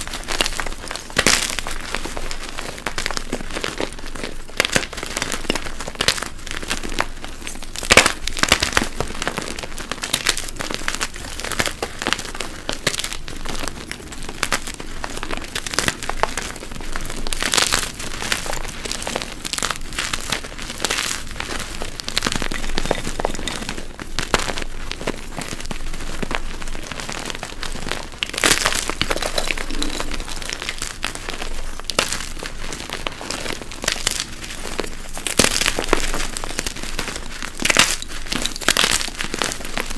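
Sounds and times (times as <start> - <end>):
chalk blocks crunching: 20.2 - 39.9.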